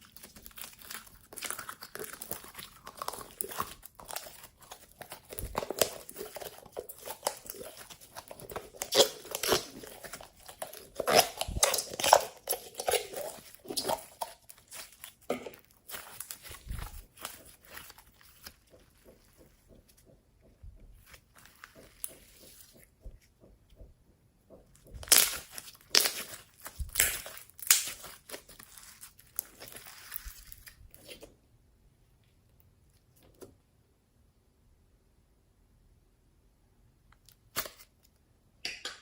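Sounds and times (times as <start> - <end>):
slime clicking and popping: 24.9 - 28.5.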